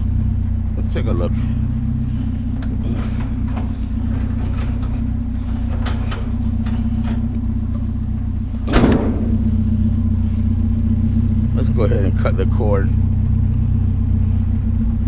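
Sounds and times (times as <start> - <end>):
vehicle engine idling: 0.0 - 15.0
loud metal clank: 8.7 - 9.5.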